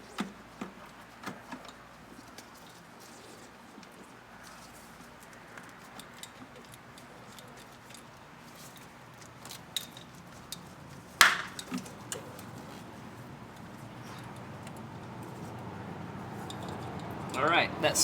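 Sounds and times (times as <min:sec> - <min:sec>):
small metal clicks: 0:05.2 - 0:12.9, 0:16.4 - 0:17.4.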